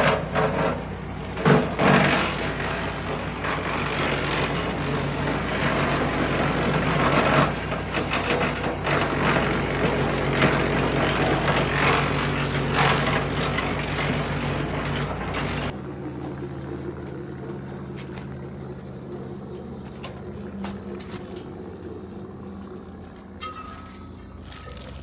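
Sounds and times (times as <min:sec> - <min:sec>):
chipper surging as material feeds: 0:00.0 - 0:25.0
wood chipper engine running: 0:00.0 - 0:25.0.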